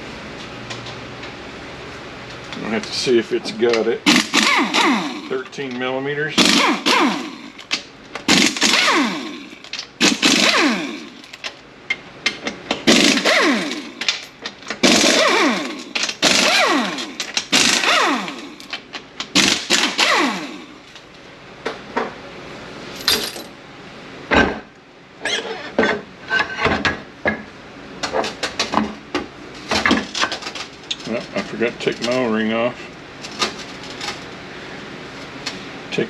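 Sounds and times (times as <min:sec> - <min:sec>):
cordless impact tool bursts: 0:04.0 - 0:05.4, 0:06.4 - 0:11.5, 0:12.8 - 0:14.2, 0:14.8 - 0:18.7, 0:19.3 - 0:20.8.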